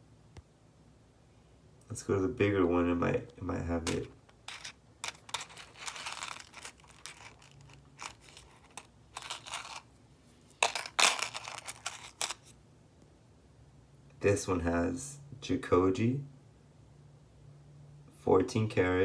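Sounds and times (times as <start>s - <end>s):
gold chain clicking: 3.9s - 9.8s, 10.6s - 12.5s
rustling: 3.9s - 12.5s.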